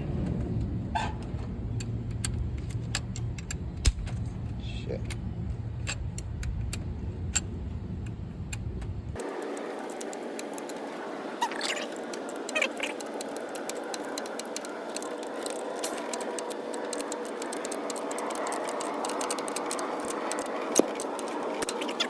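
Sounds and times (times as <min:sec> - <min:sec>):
clicks and rattles of hand tools: 0:11.5 - 0:22.0.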